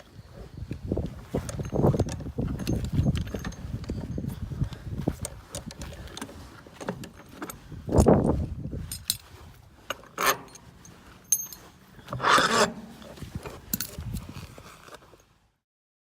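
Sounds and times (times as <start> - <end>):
metal parts and tools clicking: 1.4 - 15.3
scraping rattle: 9.8 - 15.2.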